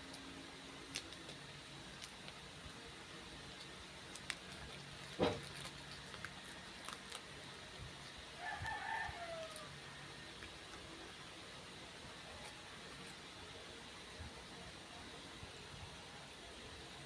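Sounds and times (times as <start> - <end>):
rooster crowing: 8.4 - 10.0.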